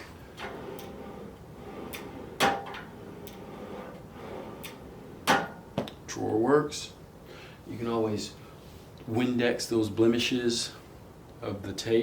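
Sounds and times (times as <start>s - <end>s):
desk drawer sliding: 0.0s - 5.8s.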